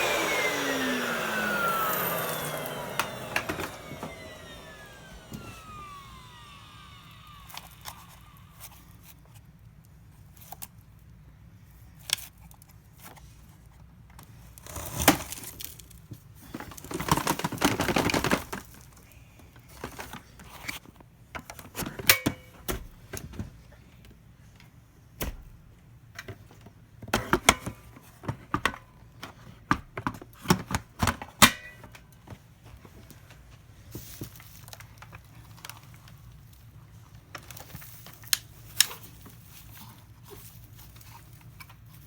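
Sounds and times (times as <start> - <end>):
rustling: 0.0 - 8.9
objects clicking and crinkling: 33.0 - 42.0.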